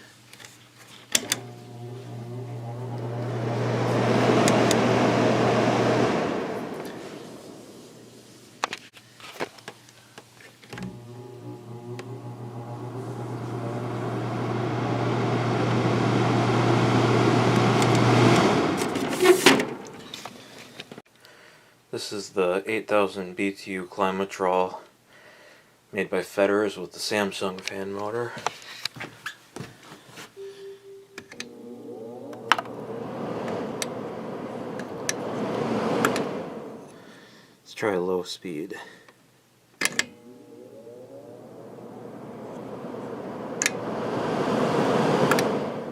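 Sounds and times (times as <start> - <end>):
fan motor humming: 1.1 - 8.9, 10.7 - 20.6, 30.8 - 37.4, 39.8 - 45.9
fan airflow rush: 1.2 - 8.9, 10.8 - 20.7, 31.4 - 37.5, 39.9 - 45.9.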